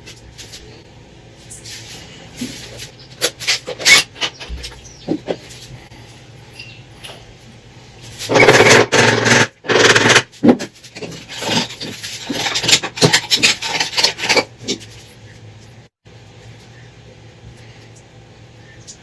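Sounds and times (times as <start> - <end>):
scraping and rubbing metal parts: 1.4 - 5.9, 7.9 - 15.7.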